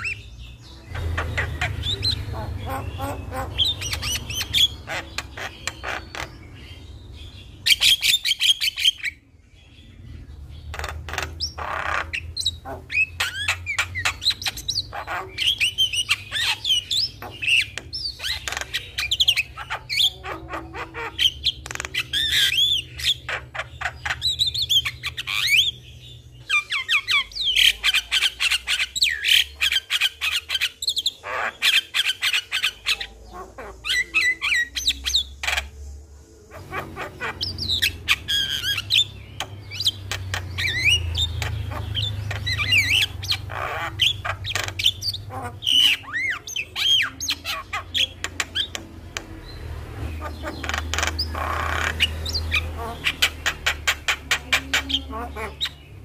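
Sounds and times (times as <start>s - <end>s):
bird singing varied song: 0.0s - 56.0s.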